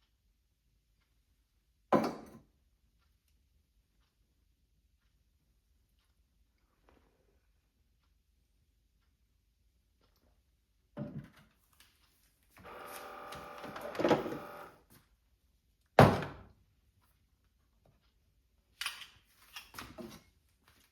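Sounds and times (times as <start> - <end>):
loud sharp thunk: 16.0 - 16.4.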